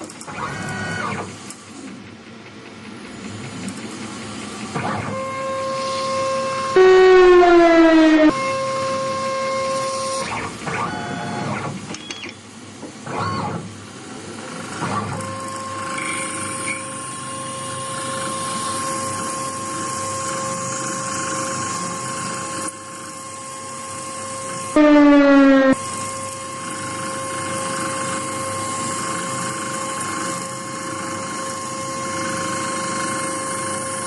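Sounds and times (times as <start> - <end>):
stepper motors whining: 3.4 - 12.4, 13.0 - 26.1.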